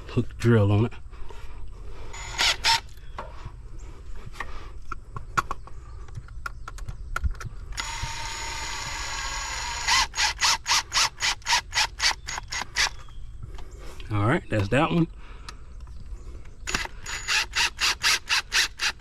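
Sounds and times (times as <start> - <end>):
cordless drill motor running: 2.1 - 2.9, 7.8 - 13.0, 16.7 - 19.0
drill clutch clicking: 7.8 - 13.0, 16.7 - 19.0.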